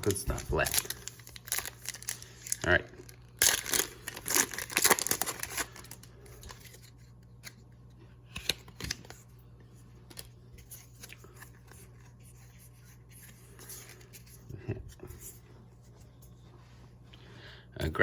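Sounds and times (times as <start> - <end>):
foil wrapper crinkling: 0.0 - 7.5
cards clicking and rustling: 8.2 - 9.2.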